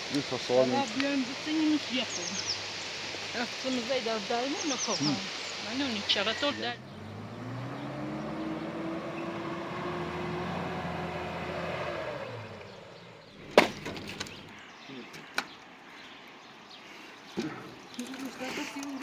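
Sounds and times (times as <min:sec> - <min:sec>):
motor running: 0:00.0 - 0:14.5
sharp crack: 0:13.4 - 0:14.6.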